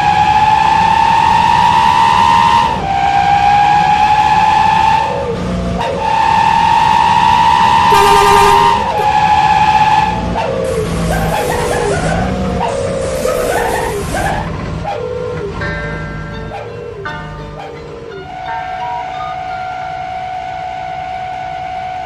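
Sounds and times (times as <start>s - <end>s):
musical truck horn blaring: 7.9s - 9.6s.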